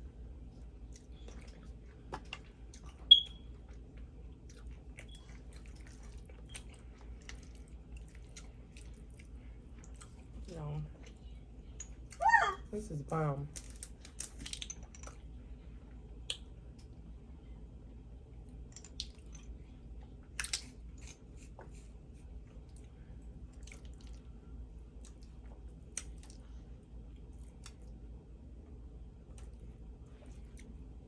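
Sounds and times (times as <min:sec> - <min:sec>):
wet eating smacks: 0:00.8 - 0:10.4, 0:18.8 - 0:19.3, 0:20.3 - 0:24.3, 0:24.9 - 0:26.5
person chewing: 0:00.9 - 0:03.8, 0:04.4 - 0:10.3, 0:23.5 - 0:24.2.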